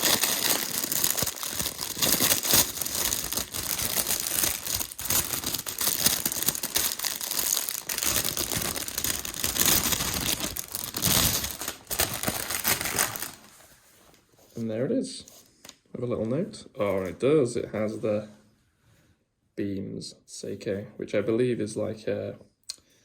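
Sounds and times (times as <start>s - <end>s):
packaging crinkling and rustling: 0.0s - 14.4s.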